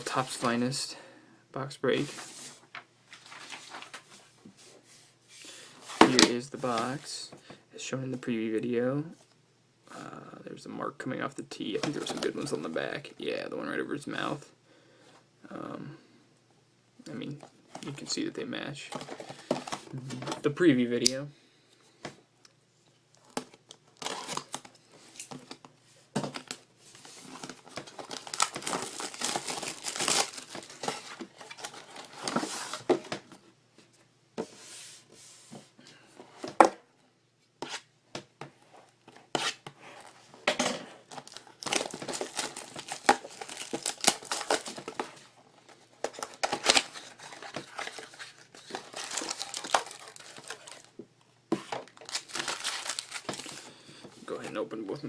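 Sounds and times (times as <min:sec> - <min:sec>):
plastic wrap crinkling and tearing: 0:23.3 - 0:25.5, 0:27.2 - 0:32.6, 0:41.1 - 0:50.9, 0:51.8 - 0:53.7.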